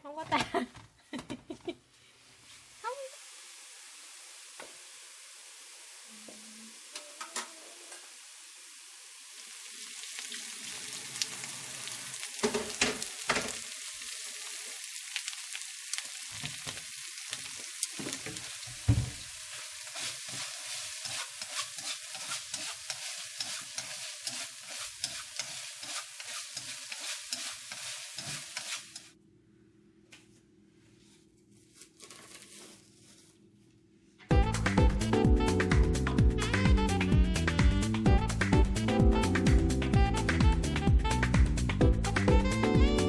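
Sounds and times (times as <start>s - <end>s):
food sizzling in a hot pan: 2.1s - 29.2s.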